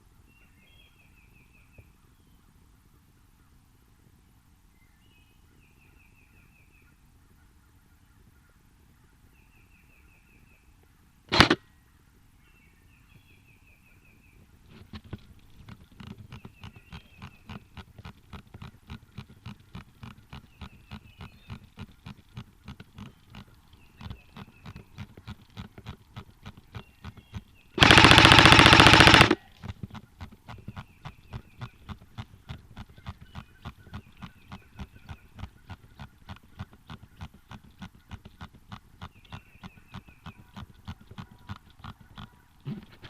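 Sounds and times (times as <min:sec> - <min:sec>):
airsoft gun shot: 0:11.3 - 0:11.6, 0:27.8 - 0:29.4
small crackling clicks: 0:14.7 - 0:43.0.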